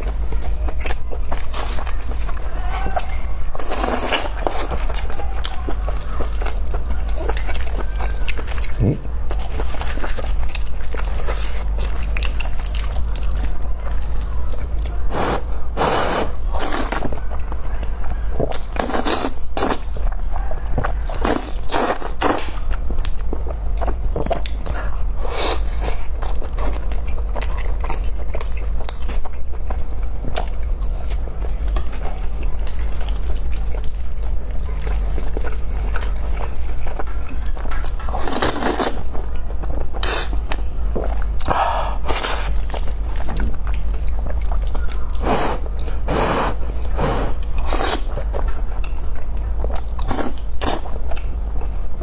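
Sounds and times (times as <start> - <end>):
steady low hum: 0.0 - 18.8
wet chewing and mouth noises: 0.0 - 52.0.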